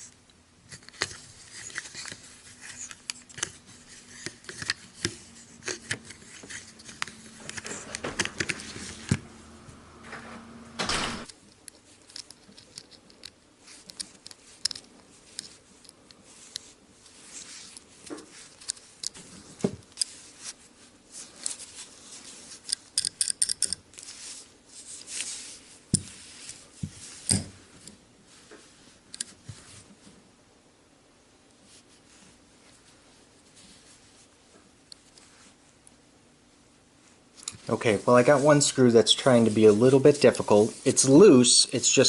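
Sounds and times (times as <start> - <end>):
screwdriver and screws clicking: 22.7 - 23.8.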